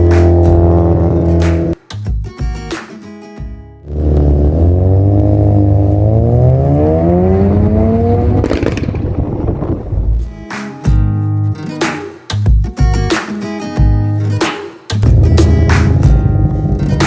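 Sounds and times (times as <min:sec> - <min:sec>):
car engine accelerating: 0:00.0 - 0:01.8, 0:03.8 - 0:10.4.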